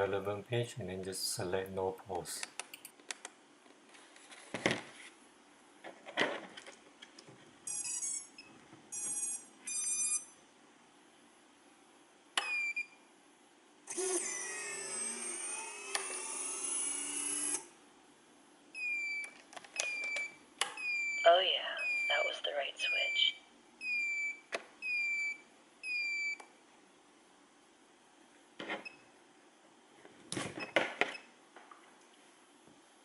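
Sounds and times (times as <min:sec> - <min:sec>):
whining tones sliding up and down: 0:13.9 - 0:17.7.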